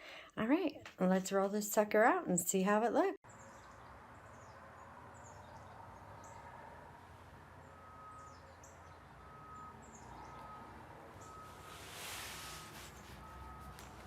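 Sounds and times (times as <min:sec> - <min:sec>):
faint birds chirping: 0:03.2 - 0:14.0.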